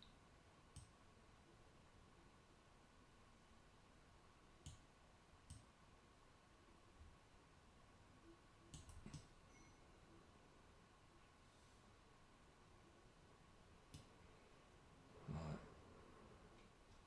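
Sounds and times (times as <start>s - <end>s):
faint computer mouse clicks: 0.0s - 1.0s, 4.6s - 4.8s, 5.4s - 5.7s, 8.7s - 9.7s.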